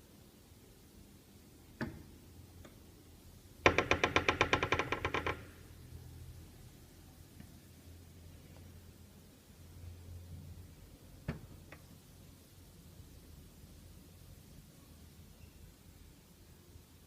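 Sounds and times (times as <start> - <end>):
door creaking: 3.6 - 5.6.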